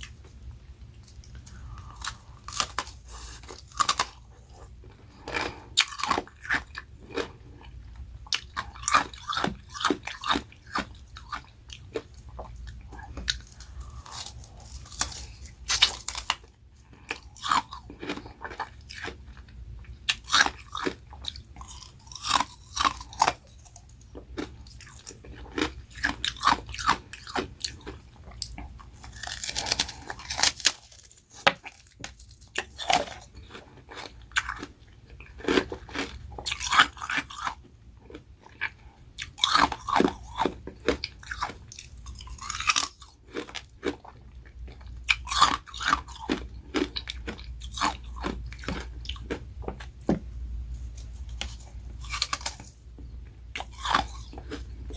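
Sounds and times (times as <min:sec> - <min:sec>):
ice crunching between teeth: 0:24.4 - 0:34.7, 0:53.6 - 0:54.9.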